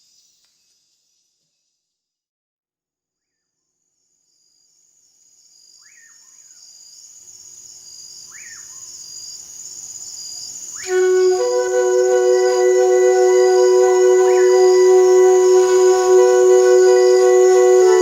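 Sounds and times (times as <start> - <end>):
flute note: 10.8 - 18.0
rising and falling calls: 10.9 - 18.0.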